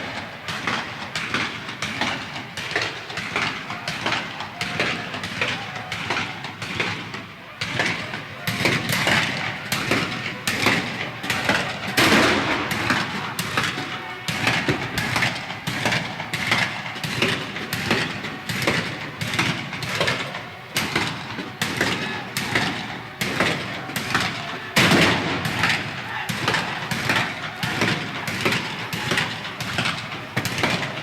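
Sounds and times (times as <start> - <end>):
battle din: 7.7 - 31.0
gunshots: 11.9 - 15.2
artillery booms: 12.0 - 13.3.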